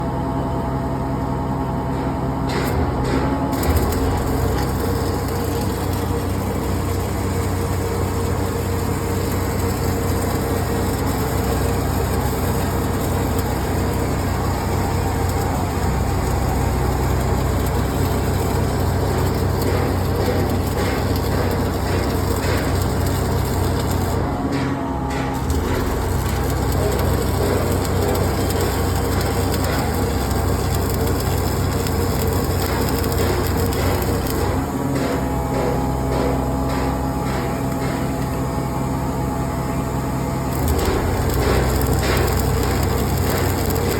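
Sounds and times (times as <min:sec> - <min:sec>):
engine droning steadily: 0:00.0 - 0:43.9
steady crackling: 0:03.6 - 0:24.3, 0:25.4 - 0:34.7, 0:40.5 - 0:43.9.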